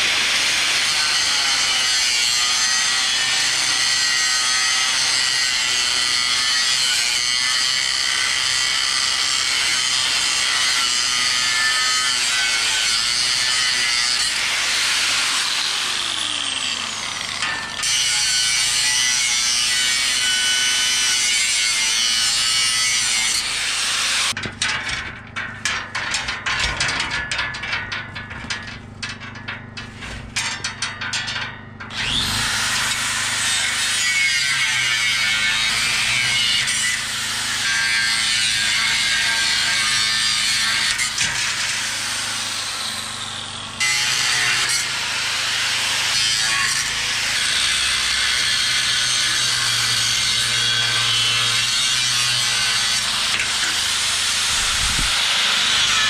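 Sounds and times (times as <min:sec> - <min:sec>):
sharp scraping and rattling: 0:00.0 - 0:36.2, 0:36.8 - 0:43.2, 0:45.8 - 0:56.0
angle grinder whine: 0:12.1 - 0:18.8, 0:46.8 - 0:56.0.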